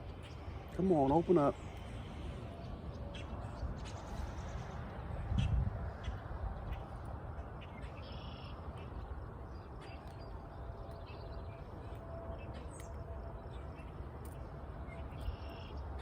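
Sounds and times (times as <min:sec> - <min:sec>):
wind noise: 0:00.0 - 0:12.7
bird calling: 0:05.4 - 0:14.0, 0:14.9 - 0:15.8.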